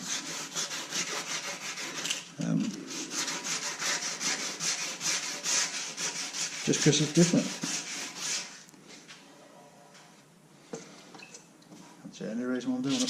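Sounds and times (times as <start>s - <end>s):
sandpaper rubbing on metal: 0.0s - 8.6s.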